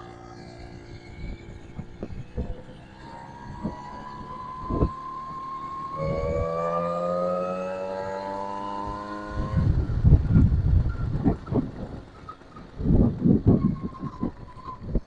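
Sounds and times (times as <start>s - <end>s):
moped engine whining: 0.0s - 15.0s
low rumbles and thumps: 9.4s - 12.1s.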